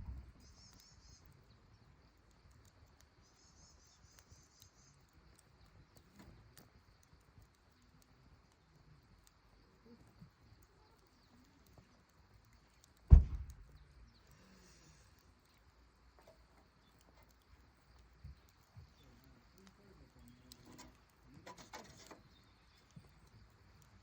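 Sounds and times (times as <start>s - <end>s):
campfire crackling: 0.0s - 24.0s
low thump: 13.1s - 13.7s.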